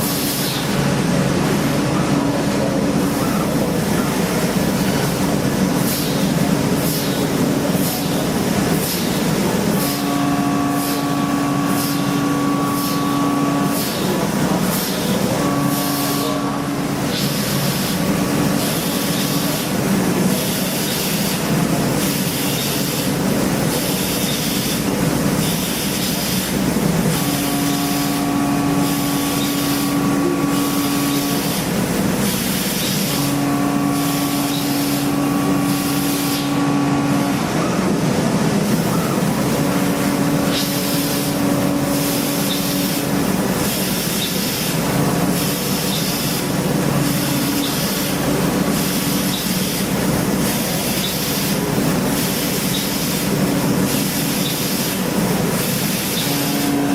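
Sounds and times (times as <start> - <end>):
hiss of coolant spray: 4.2 - 10.1, 17.0 - 36.8, 38.6 - 56.9
machine cutting tone: 25.4 - 37.8.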